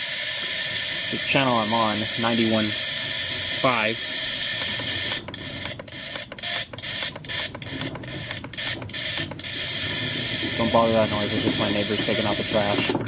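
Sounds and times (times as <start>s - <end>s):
radio static hiss: 0.0s - 13.0s
sharp regular clicks: 3.0s - 10.6s.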